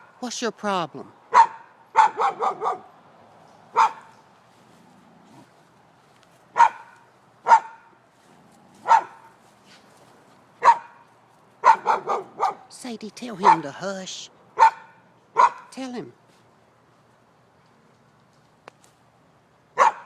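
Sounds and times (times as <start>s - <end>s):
dog barking: 1.3s - 3.0s, 3.7s - 4.2s, 6.5s - 8.0s, 8.8s - 9.3s, 10.6s - 12.7s, 13.4s - 13.8s, 14.6s - 15.7s, 19.8s - 20.0s.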